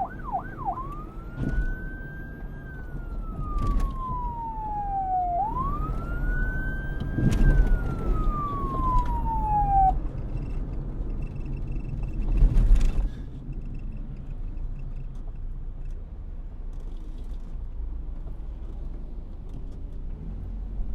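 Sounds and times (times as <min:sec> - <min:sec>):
police siren wailing: 0:00.0 - 0:10.1.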